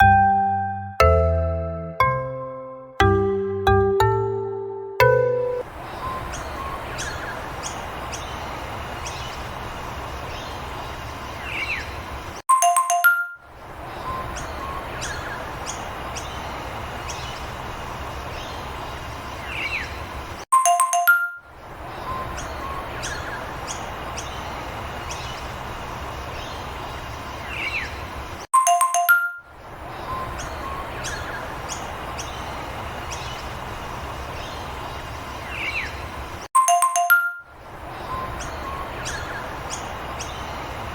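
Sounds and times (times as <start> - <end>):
background music loop: 0.0 - 7.2, 12.5 - 13.5, 20.5 - 21.5, 28.6 - 29.5, 36.6 - 37.6
bird-like chirps: 5.4 - 40.9
ding-dong chime: 12.5 - 13.5, 20.5 - 21.5, 28.6 - 29.5, 36.6 - 37.6.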